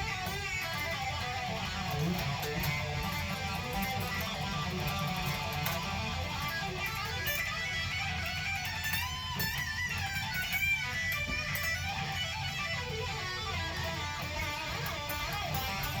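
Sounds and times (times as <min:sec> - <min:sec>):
guitar playing: 0:00.0 - 0:16.0.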